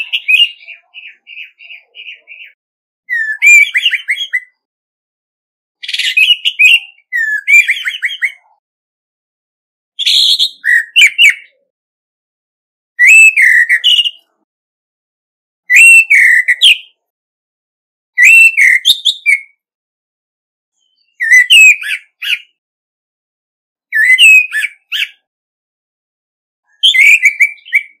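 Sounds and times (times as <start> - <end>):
thrush whistling song: 0.0 - 4.6, 5.8 - 8.5, 10.0 - 11.6, 13.0 - 14.4, 15.7 - 17.0, 18.2 - 19.6, 20.8 - 22.6, 23.9 - 25.3, 26.7 - 28.0.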